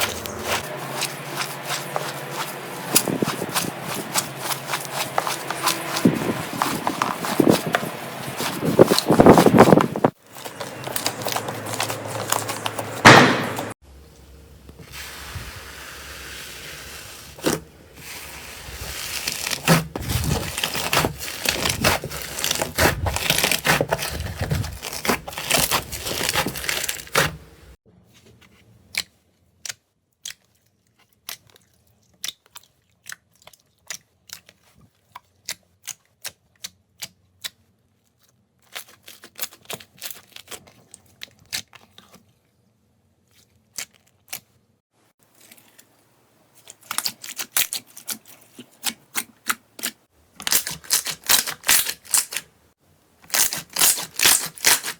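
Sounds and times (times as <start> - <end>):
slime crackling and tearing: 0.0 - 13.7, 17.4 - 27.4, 35.3 - 42.3, 46.6 - 52.5, 53.2 - 54.9.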